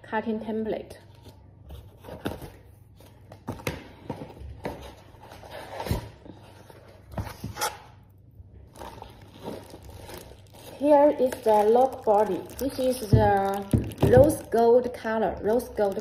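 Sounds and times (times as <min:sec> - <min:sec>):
packaging rustling and parts clicking: 0:08.7 - 0:14.7.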